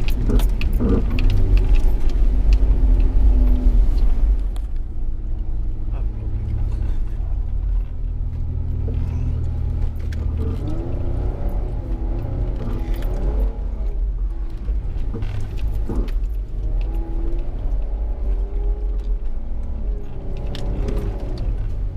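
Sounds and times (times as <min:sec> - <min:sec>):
clicks and rattles: 0:00.0 - 0:04.8
vehicle engine droning: 0:00.0 - 0:21.9.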